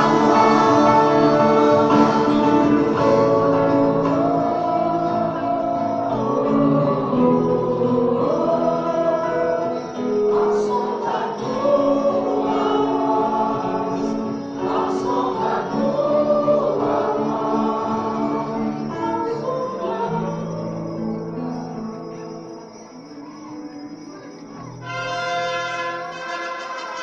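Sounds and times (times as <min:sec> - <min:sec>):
group singing gospel song: 0:00.0 - 0:21.0
musical backing: 0:00.0 - 0:27.0.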